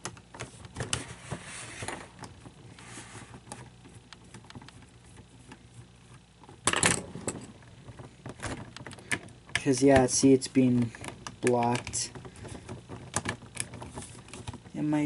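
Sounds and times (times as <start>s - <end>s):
plastic clicks and rattles: 3.4s - 14.8s.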